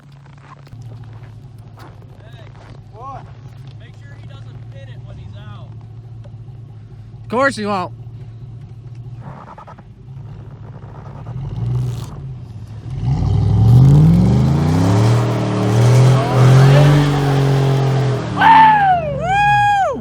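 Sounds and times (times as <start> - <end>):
truck engine revving: 0.3 - 19.7
high rising and falling cries: 13.9 - 20.0.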